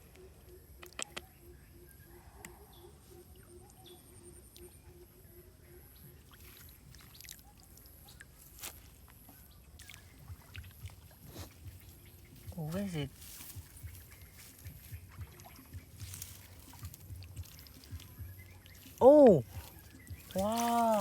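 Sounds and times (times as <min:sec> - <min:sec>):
small clicks and splashes: 0:06.3 - 0:21.0.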